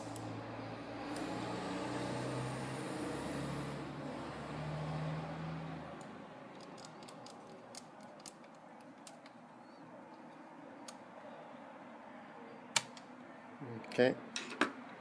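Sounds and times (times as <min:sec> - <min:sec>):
small tools clicking: 0:06.6 - 0:09.3.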